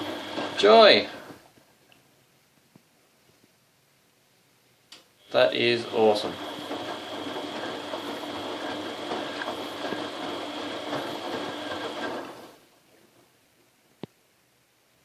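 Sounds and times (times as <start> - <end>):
washing machine motor humming: 0.0 - 1.5, 5.2 - 13.2.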